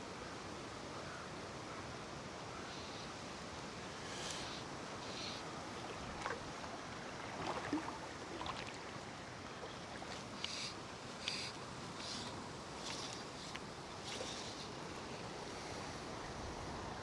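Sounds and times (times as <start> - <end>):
river water rushing: 4.8 - 17.0.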